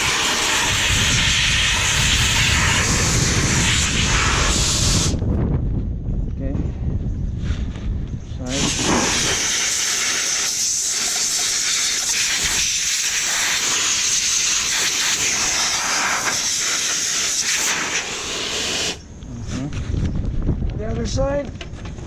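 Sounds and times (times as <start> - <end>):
air blow gun hissing: 0.0 - 5.2, 8.5 - 19.1.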